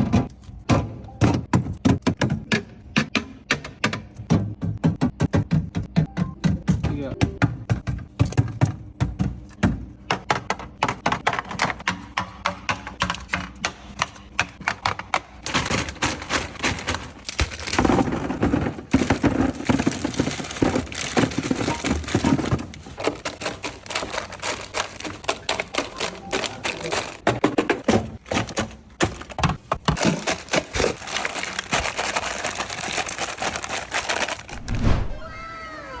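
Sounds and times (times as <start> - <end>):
food containers clicking and knocking: 0.0 - 34.6
rustling and clatter: 15.4 - 35.0.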